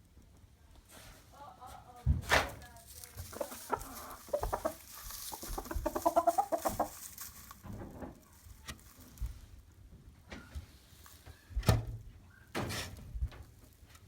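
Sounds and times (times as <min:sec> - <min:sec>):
chicken clucking: 0:02.8 - 0:09.0.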